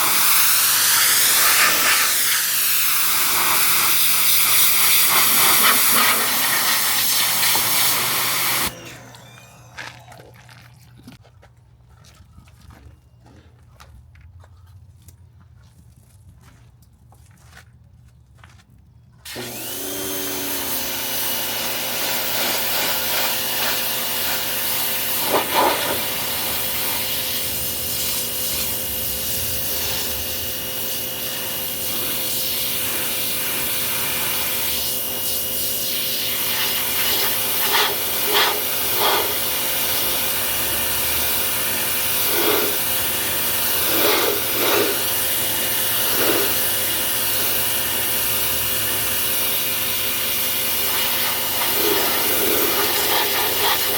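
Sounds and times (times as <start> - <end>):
pressure washer spraying: 0.0 - 9.3, 19.3 - 53.9.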